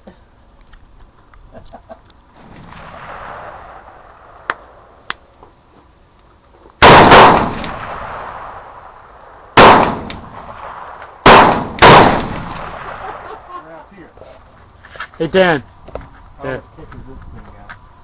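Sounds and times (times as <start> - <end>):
loud gunshots with echo: 6.8 - 8.8, 9.6 - 13.1.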